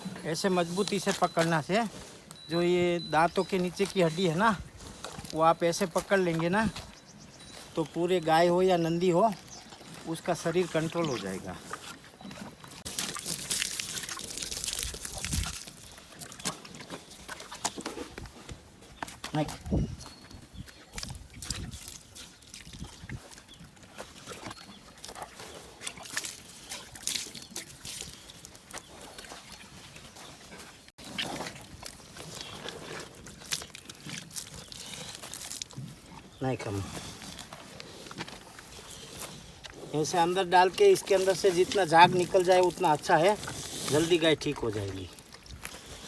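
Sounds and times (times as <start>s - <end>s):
liquid splashing and gurgling: 12.8s - 17.6s, 20.9s - 29.6s
cow snorting and gurgling: 20.9s - 46.0s.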